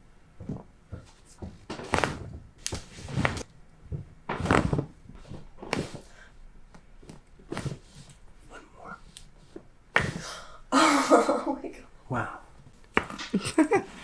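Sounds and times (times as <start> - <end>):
rustling: 0.4 - 8.3.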